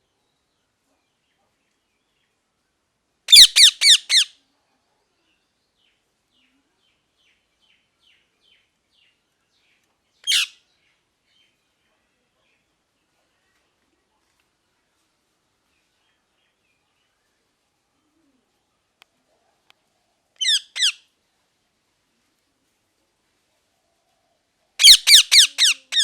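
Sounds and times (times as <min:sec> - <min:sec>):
parrot squawking harshly: 0:03.3 - 0:04.3, 0:10.3 - 0:10.5, 0:20.4 - 0:21.0, 0:24.8 - 0:26.0.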